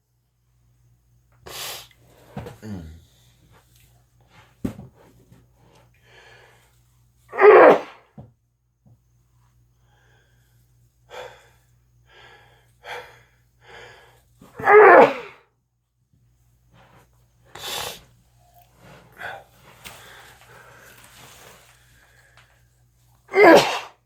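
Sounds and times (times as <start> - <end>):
person sneezing: 7.3 - 8.0, 14.6 - 15.4, 23.3 - 24.0.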